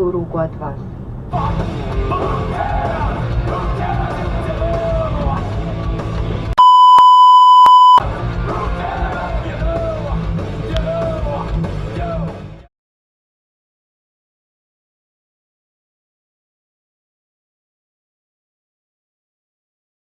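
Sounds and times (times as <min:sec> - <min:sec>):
loud music with singing: 0:01.3 - 0:06.4, 0:08.0 - 0:12.7
censor beep: 0:06.6 - 0:08.0.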